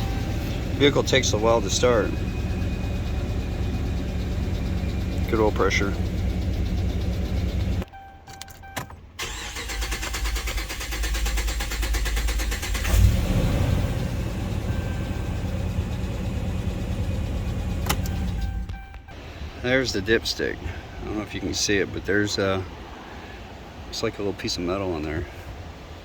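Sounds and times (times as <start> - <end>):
engine idling: 0.0 - 7.8, 9.2 - 21.4
truck engine cranking: 0.0 - 19.2.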